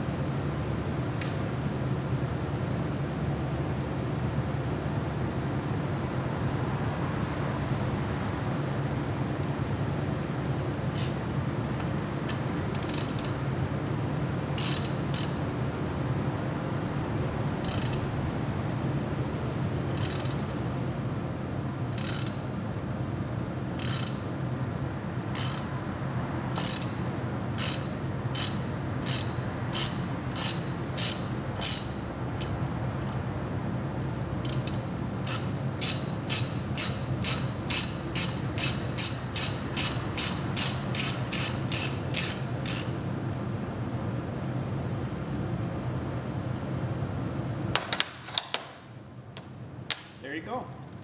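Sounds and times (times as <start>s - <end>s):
ratchet wrench clicking: 9.4s - 9.7s, 10.9s - 11.3s, 12.7s - 13.4s, 14.6s - 15.4s, 17.6s - 18.1s, 19.9s - 20.6s, 21.9s - 22.5s, 23.8s - 24.3s, 25.3s - 25.8s, 26.5s - 33.2s, 34.4s - 43.0s.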